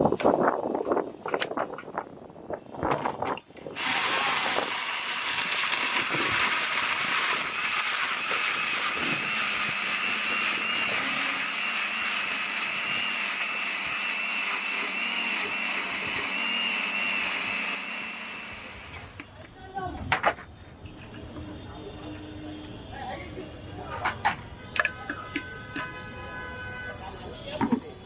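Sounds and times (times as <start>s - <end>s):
electric blender running: 3.8s - 19.1s.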